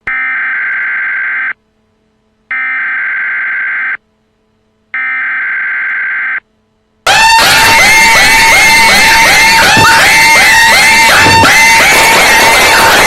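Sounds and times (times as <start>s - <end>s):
emergency alert data bursts: 7.1s - 13.0s.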